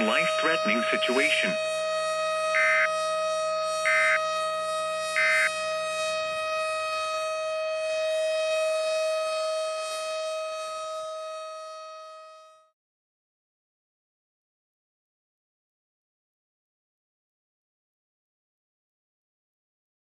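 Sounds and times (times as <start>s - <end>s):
warbling data bursts: 2.6s - 2.9s, 3.9s - 4.2s, 5.2s - 5.5s.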